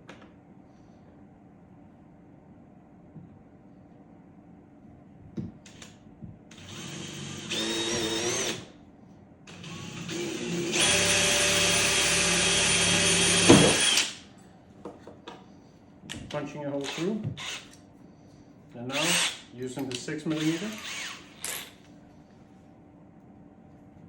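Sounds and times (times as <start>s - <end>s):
power drill boring through plastic: 6.6s - 8.7s, 9.5s - 14.2s, 16.8s - 17.7s, 18.9s - 19.4s, 20.3s - 21.3s.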